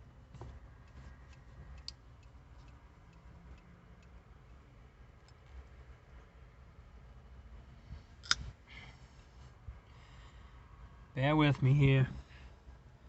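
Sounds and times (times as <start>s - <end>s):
low steady hum: 0.0s - 13.0s
small clicks from handling parts: 0.3s - 4.6s, 5.2s - 5.7s, 8.2s - 8.5s.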